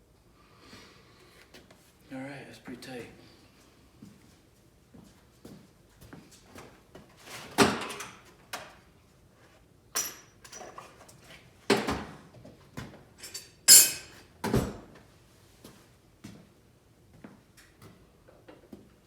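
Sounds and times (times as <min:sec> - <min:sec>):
metal tools clanking: 0:13.2 - 0:14.2.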